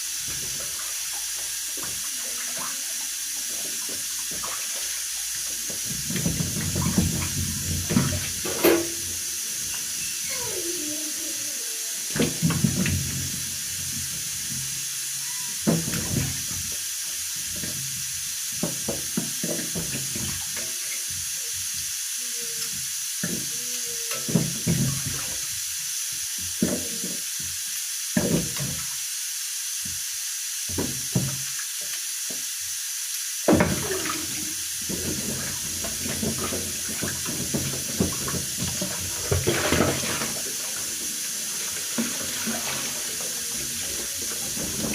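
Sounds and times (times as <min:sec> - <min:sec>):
tap water running into sink: 0:00.0 - 0:29.1, 0:29.8 - 0:44.9
splashes and knocks: 0:00.2 - 0:09.8, 0:12.1 - 0:14.7, 0:15.6 - 0:16.8, 0:18.6 - 0:20.7, 0:24.2 - 0:25.4, 0:28.2 - 0:28.9, 0:33.5 - 0:44.9.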